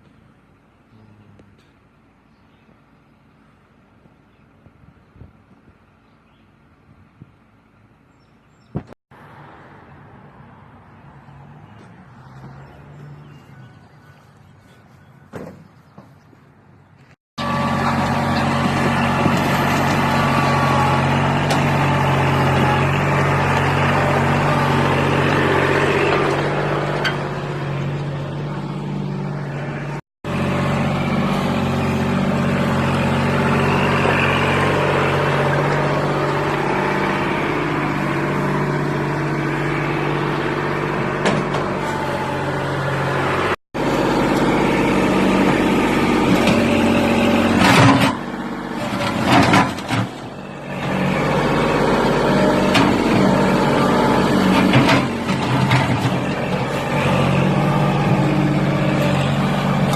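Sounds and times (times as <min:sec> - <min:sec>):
large engine running: 0:17.0 - 0:59.9.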